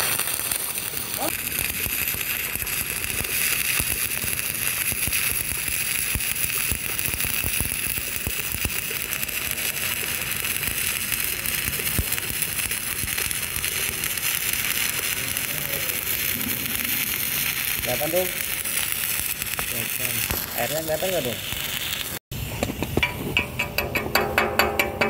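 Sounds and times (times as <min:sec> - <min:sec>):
welding arc crackle: 0:00.0 - 0:25.0.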